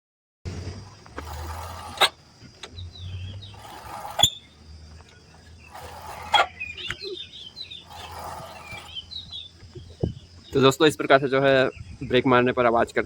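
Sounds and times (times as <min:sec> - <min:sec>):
motorcycle drum brake squealing: 0:00.5 - 0:05.0, 0:05.6 - 0:10.3.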